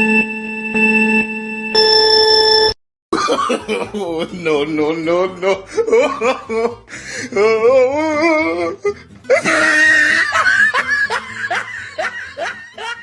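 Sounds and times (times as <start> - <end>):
shrill cackling laughter: 9.3 - 13.0.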